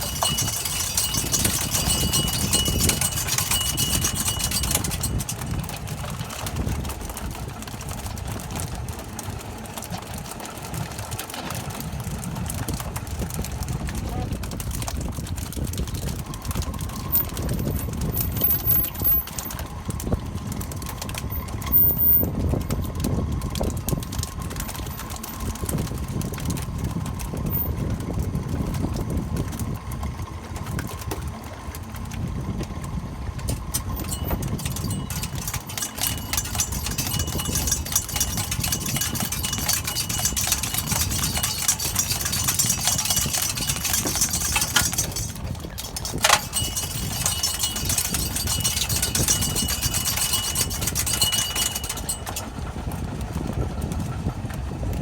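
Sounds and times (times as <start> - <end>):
boat engine idling: 0.0 - 11.4, 15.2 - 54.8.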